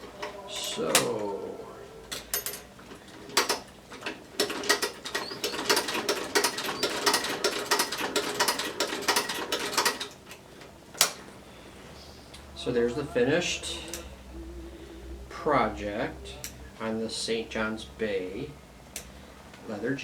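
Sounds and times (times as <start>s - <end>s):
sewing machine stitching leather: 3.3s - 10.2s.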